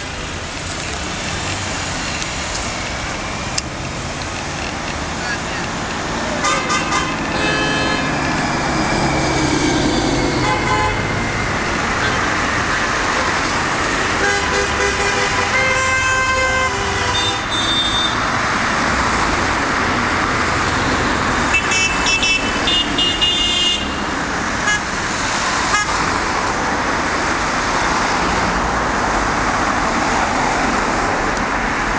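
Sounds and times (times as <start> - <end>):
road traffic: 0.0 - 31.9
car horns: 6.2 - 12.6, 13.9 - 18.4, 21.4 - 25.0, 25.6 - 26.0.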